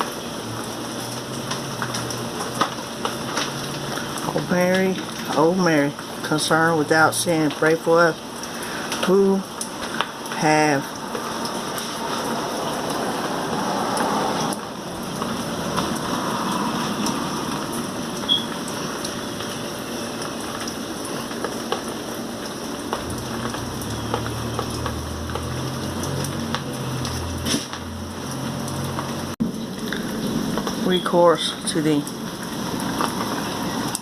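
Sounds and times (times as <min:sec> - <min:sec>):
rain falling: 0:00.0 - 0:34.0
drops ticking: 0:17.0 - 0:33.3.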